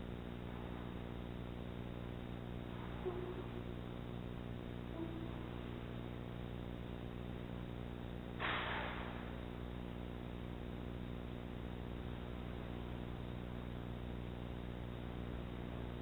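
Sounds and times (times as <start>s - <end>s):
low electrical hum: 0.0s - 16.0s
burst of noise: 8.3s - 9.5s.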